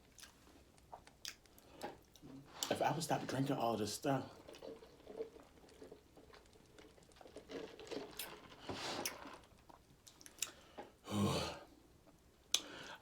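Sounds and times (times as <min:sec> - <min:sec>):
person chewing crunchy food: 0:00.0 - 0:02.7, 0:04.4 - 0:10.9
wet mouth clicks: 0:00.1 - 0:01.7, 0:10.1 - 0:10.6.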